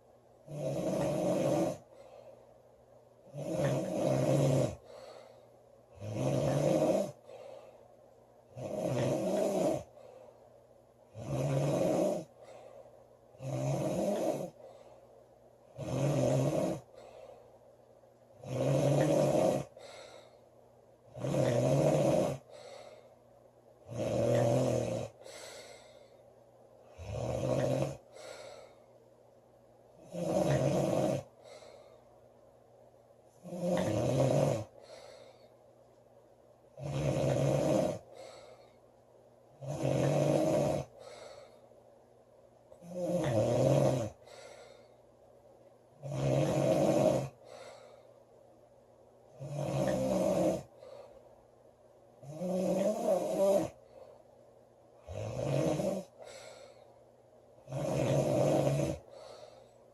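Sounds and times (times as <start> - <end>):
woman snoring: 0.5 - 1.9, 3.3 - 5.1, 6.0 - 7.3, 8.5 - 10.0, 11.1 - 12.4, 13.4 - 14.6, 15.7 - 17.0, 18.4 - 20.0, 21.1 - 22.5, 23.9 - 26.0, 26.9 - 28.8, 30.0 - 31.3, 33.4 - 34.8, 36.8 - 38.6, 39.6 - 41.4, 42.8 - 44.3, 46.0 - 47.9, 49.3 - 50.8, 52.2 - 53.8, 55.0 - 56.7, 57.6 - 59.6.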